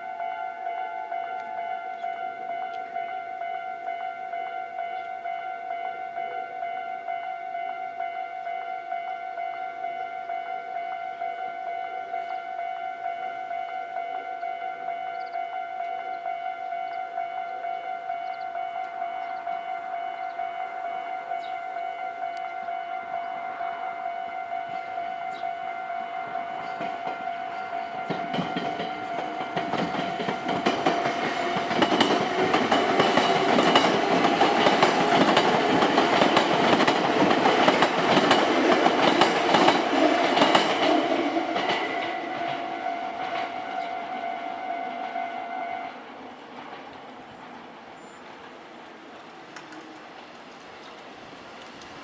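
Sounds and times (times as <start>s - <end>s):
level crossing alarm ringing: 0.0s - 46.1s
train wheels clattering over rail joints: 26.4s - 44.1s.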